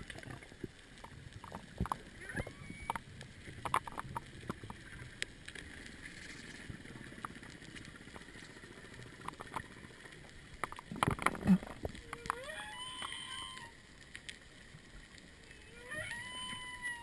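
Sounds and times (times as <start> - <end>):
scattered clicks: 0.0 - 14.4
whale song underwater: 1.8 - 3.1, 11.5 - 13.9, 15.4 - 17.0.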